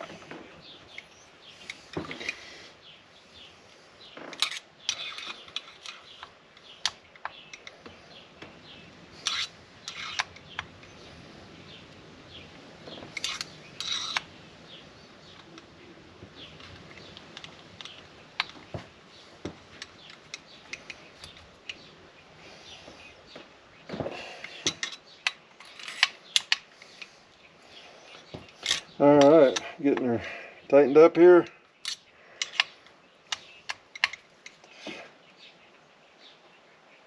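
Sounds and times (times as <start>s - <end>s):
metallic clicks of hand tools: 31.8s - 34.7s.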